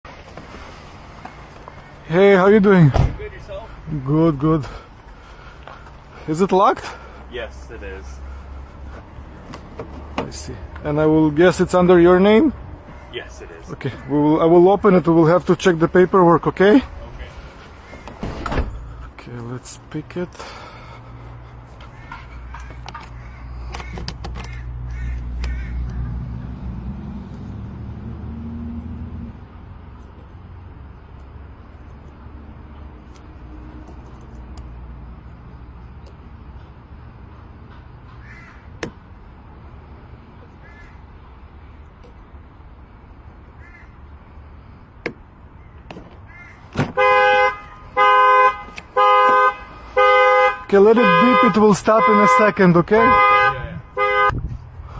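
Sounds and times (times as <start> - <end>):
vehicle engine humming: 0.1 - 54.9
crows cawing: 1.2 - 2.1, 20.4 - 26.2, 37.7 - 39.0, 40.5 - 41.3, 43.4 - 44.6, 45.6 - 46.8
car horn blasting: 46.9 - 54.4.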